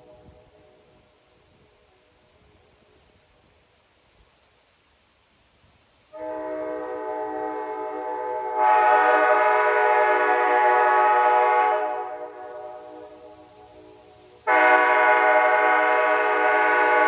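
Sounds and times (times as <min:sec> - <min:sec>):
train horn chord: 0:06.1 - 0:17.0.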